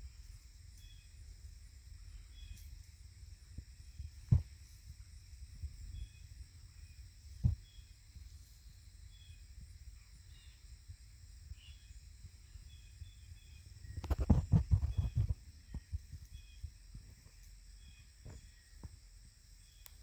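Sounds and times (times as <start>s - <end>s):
crickets trilling: 0.0s - 20.0s
knocks and rustles: 13.9s - 16.3s.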